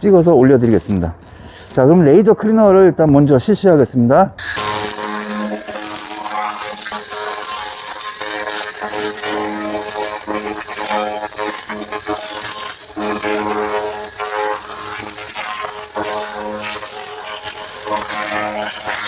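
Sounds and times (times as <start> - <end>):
steady high hiss: 4.4 - 19.0.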